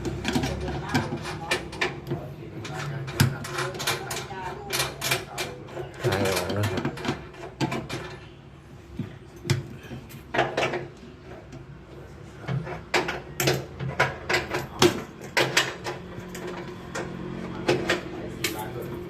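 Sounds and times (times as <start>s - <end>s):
hand tools clicking and clinking: 12.4s - 19.0s.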